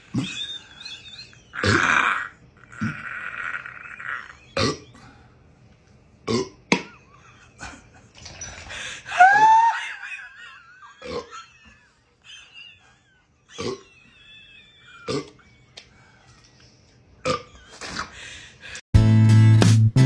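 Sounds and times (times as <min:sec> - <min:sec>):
person burping: 0:01.6 - 0:05.0, 0:06.2 - 0:06.9, 0:17.2 - 0:18.0.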